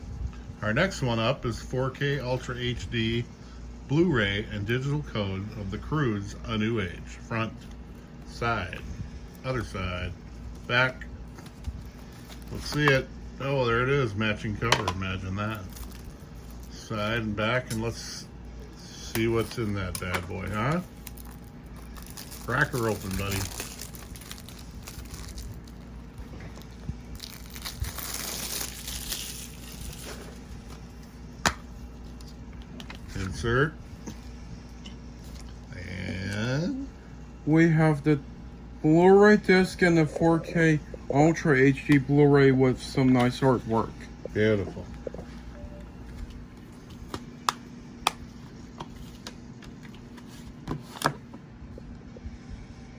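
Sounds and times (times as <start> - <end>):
faint steady hum: 0.0 - 52.9
plastic packaging crinkling: 15.4 - 17.2, 19.1 - 33.3.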